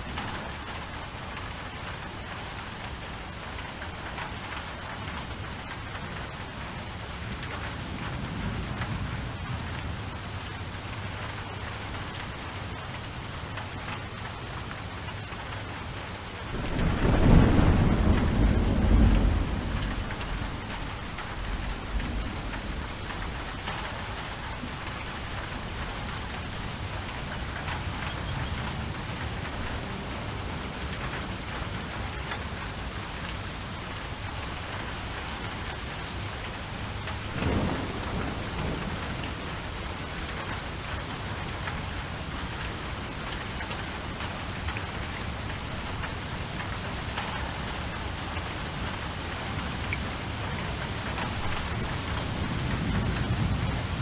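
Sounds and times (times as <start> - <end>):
steady rain falling: 0.0 - 54.0
low thunder rumble: 16.5 - 31.6, 37.2 - 43.4, 49.7 - 54.0.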